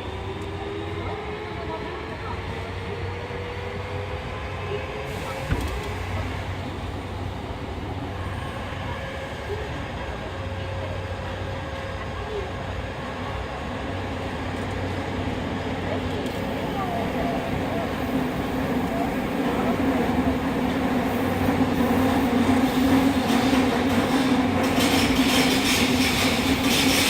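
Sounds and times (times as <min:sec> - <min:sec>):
wheel and rail noise: 0:13.9 - 0:27.0.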